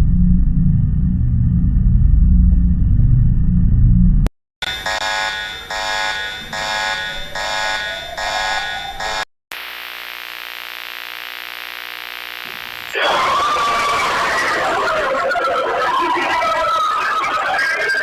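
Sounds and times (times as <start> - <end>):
pulsing multi-tone alarm beeps: 4.6 - 9.3
harsh wavering alarm sound: 4.6 - 13.0
steady droning alarm tone: 4.6 - 13.0.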